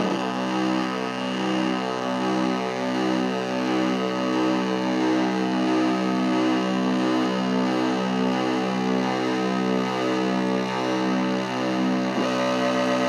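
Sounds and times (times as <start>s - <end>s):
buzzy synthesizer drone: 0.0s - 4.0s, 12.0s - 13.0s.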